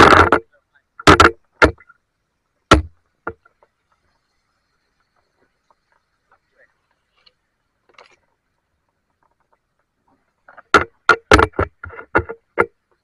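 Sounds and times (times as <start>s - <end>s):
sharp knocks: 1.0s - 1.8s, 2.7s - 3.4s, 10.5s - 12.8s.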